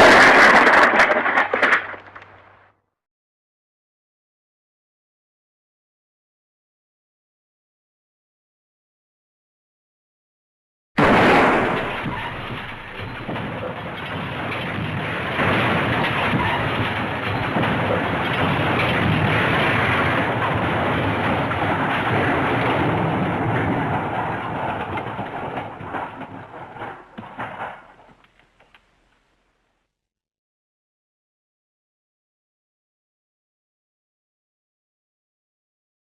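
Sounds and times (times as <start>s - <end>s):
rumbling clatter of debris: 0.0s - 2.6s, 11.0s - 29.6s
sudden loud impact: 11.0s - 28.2s.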